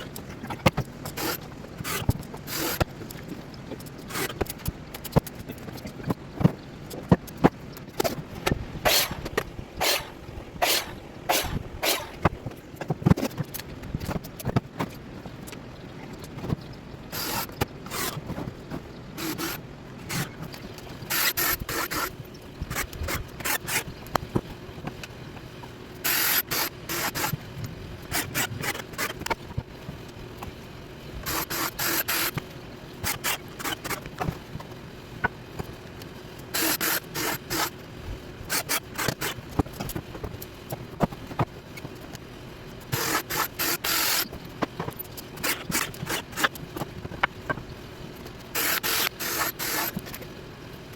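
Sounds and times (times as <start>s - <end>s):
rasping hissing strokes: 8.8s - 9.2s, 9.8s - 12.2s.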